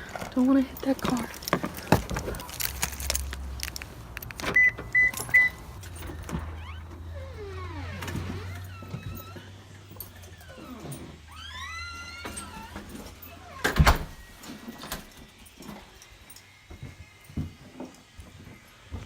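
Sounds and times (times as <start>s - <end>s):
faint sliding squeaks: 4.6s - 15.0s.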